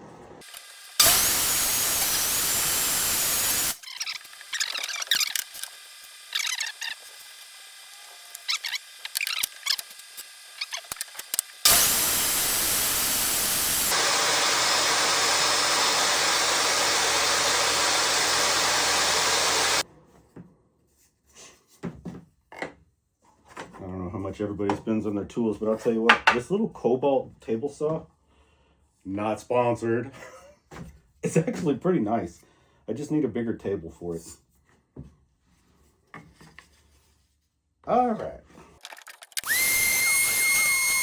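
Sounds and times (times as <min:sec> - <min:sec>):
table saw cutting wood: 0:00.4 - 0:19.8, 0:39.3 - 0:41.0
wood knocking and clattering: 0:26.1 - 0:26.4.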